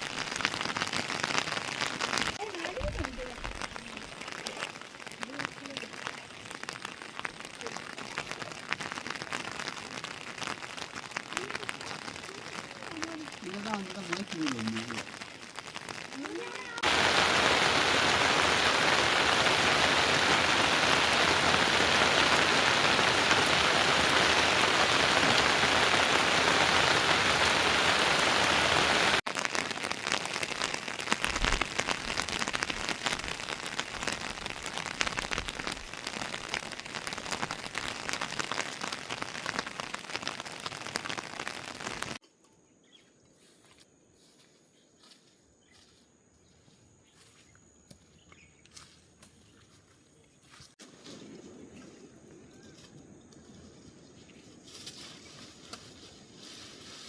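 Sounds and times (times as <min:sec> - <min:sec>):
heavy rain hissing: 0:00.0 - 0:42.2
raindrops pattering: 0:00.0 - 0:42.2.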